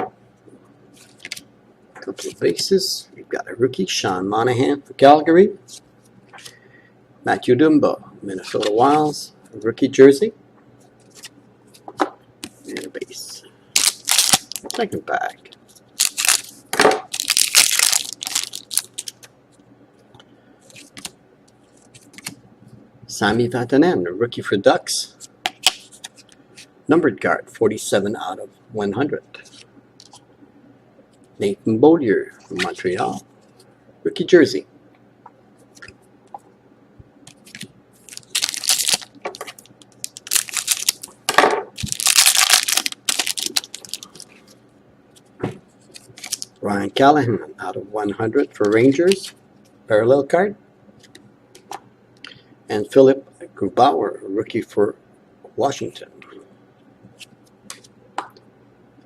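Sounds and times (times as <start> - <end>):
card wrapper tearing and crinkling: 13.8 - 14.8, 16.0 - 19.3, 37.4 - 41.2, 41.8 - 44.4, 46.0 - 46.5
cards rustling and clicking: 13.8 - 14.8, 16.0 - 19.3, 37.3 - 41.2, 41.8 - 44.5.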